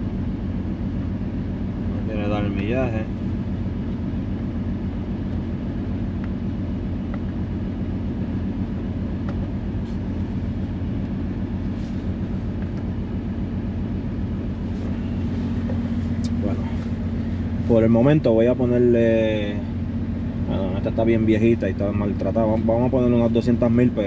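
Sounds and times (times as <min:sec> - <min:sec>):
car engine idling with misfire: 0:00.0 - 0:24.0.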